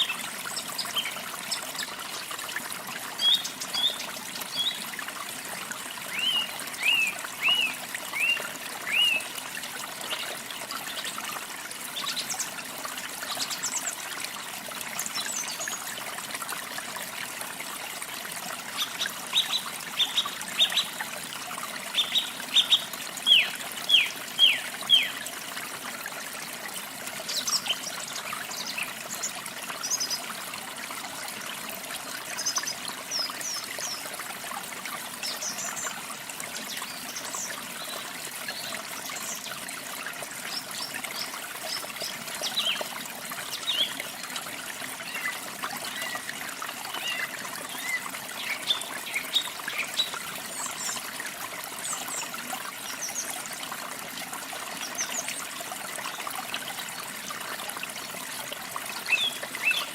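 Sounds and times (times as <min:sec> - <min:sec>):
water trickling: 0:00.0 - 0:59.9
small birds chirping: 0:21.9 - 0:25.2.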